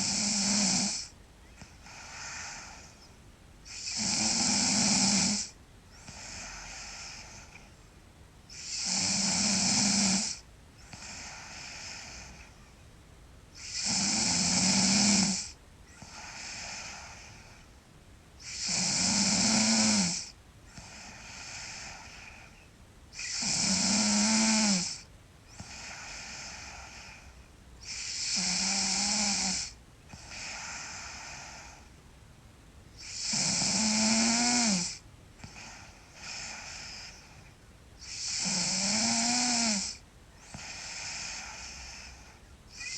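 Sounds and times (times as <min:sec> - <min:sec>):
girl snoring loudly: 0:00.0 - 0:01.1, 0:03.7 - 0:07.6, 0:08.5 - 0:12.6, 0:13.6 - 0:17.6, 0:18.4 - 0:22.5, 0:23.2 - 0:27.3, 0:27.9 - 0:31.9, 0:33.0 - 0:37.4, 0:38.0 - 0:42.9
soft breathing: 0:01.0 - 0:04.0, 0:05.3 - 0:08.7, 0:10.3 - 0:12.9, 0:15.4 - 0:17.9, 0:20.2 - 0:23.3, 0:25.0 - 0:28.2, 0:29.6 - 0:32.0, 0:35.0 - 0:38.2, 0:39.4 - 0:42.9.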